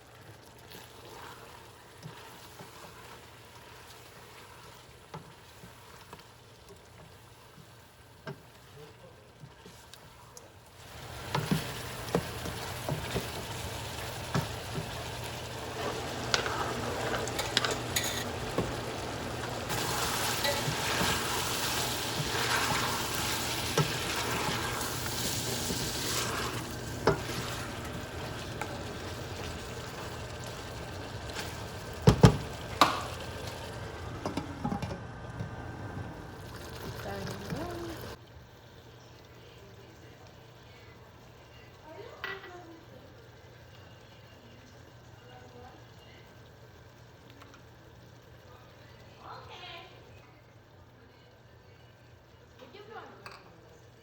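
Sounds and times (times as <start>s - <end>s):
chicken sizzling in hot oil: 0.0s - 50.2s
spoon stirring and clicking on pan: 0.7s - 8.7s, 9.4s - 18.8s, 19.7s - 30.6s.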